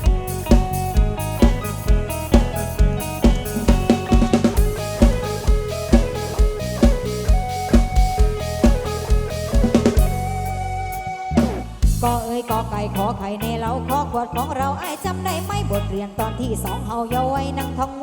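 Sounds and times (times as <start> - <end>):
heavy kick drum: 0.0 - 10.4, 11.5 - 12.3
plucked string guitar line: 0.0 - 15.0
live band over loudspeaker: 0.0 - 18.0.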